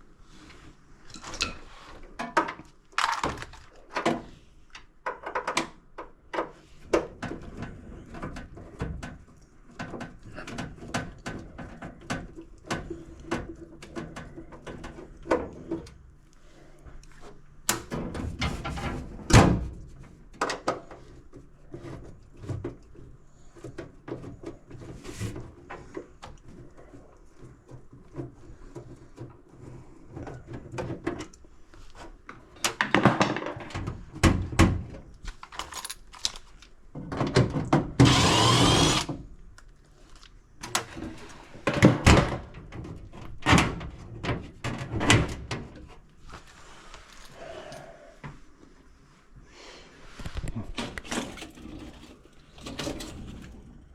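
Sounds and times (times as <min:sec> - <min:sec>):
tools and parts clattering: 0:01.1 - 0:04.3, 0:35.2 - 0:39.0.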